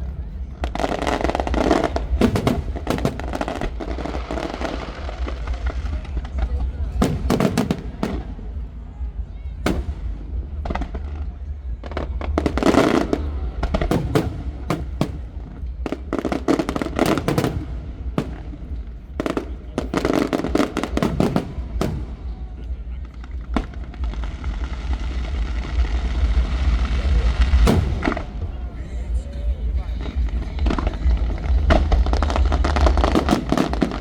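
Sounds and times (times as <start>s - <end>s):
steady low rumble: 0.0s - 34.0s.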